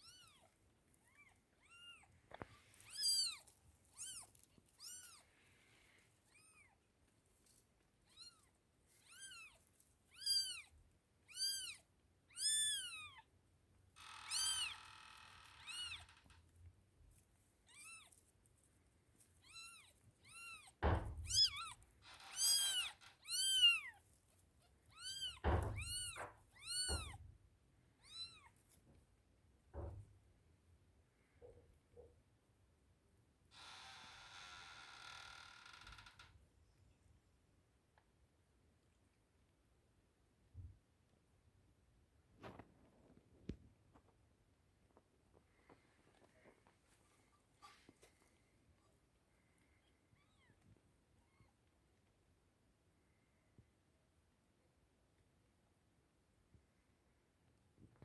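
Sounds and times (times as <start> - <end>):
rustling: 0.0 - 11.8, 14.0 - 27.4, 42.4 - 50.8
kittens mewing: 19.4 - 24.0, 24.9 - 27.2
soft thumps: 25.1 - 27.3.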